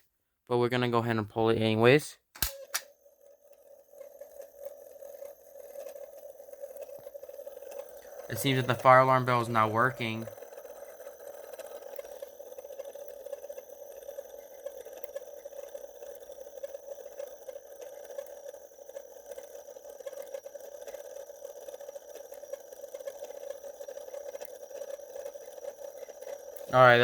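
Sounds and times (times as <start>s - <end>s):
faint alarm bell buzz: 8.0s - 10.3s.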